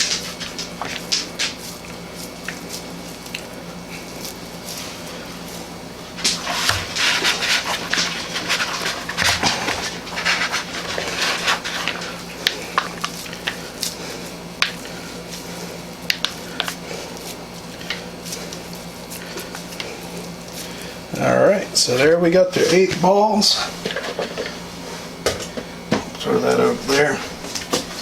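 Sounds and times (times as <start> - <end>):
hands squelching meat mixture: 0.5 - 21.2.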